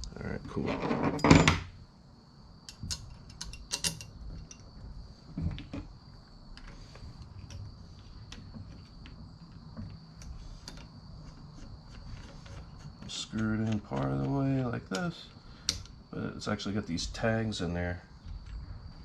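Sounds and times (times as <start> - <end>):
high insect trill: 0.0 - 19.0
small hard parts clicking: 2.7 - 4.7, 10.1 - 16.0.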